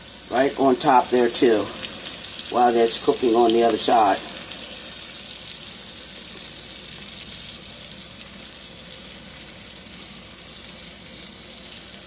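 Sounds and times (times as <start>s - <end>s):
steak sizzling in a pan: 0.0s - 12.0s.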